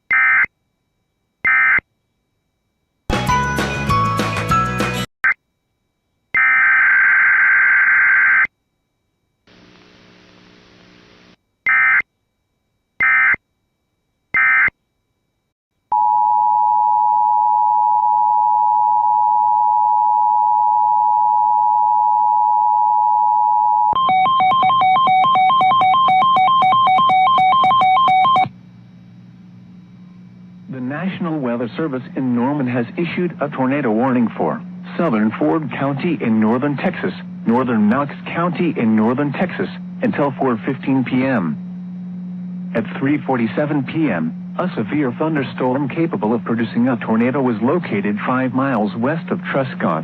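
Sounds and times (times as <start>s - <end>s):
rapidly pulsing multi-tone signal: 0.0s - 1.9s, 13.0s - 13.4s, 23.9s - 28.6s, 30.6s - 50.0s
two-tone attention signal: 23.9s - 28.5s
alert data bursts: 24.0s - 28.5s.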